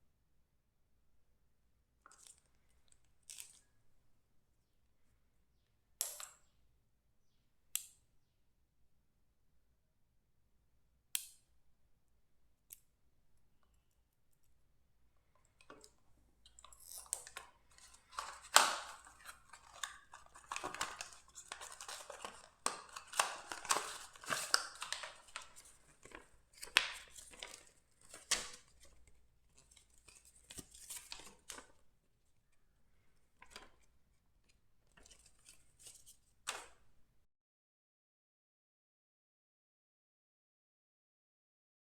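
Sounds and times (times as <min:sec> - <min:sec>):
packaging crinkling and rustling: 0:16.6 - 0:31.9
box clicks: 0:16.7 - 0:29.0.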